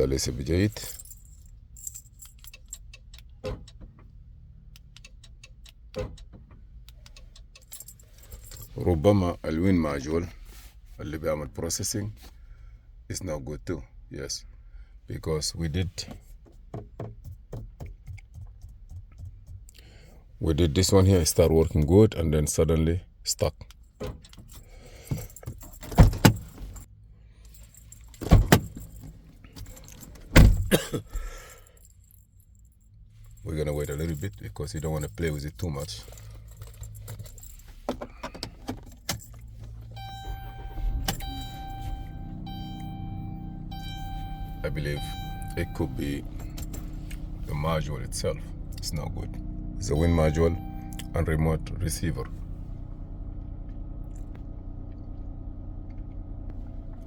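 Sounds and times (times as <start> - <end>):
keys and key fob clicks: 0.6 - 8.8, 27.5 - 31.1, 33.3 - 49.1, 49.8 - 51.2
door locks clunking: 28.2 - 29.1, 38.0 - 47.4
low steady hum: 39.1 - 57.0.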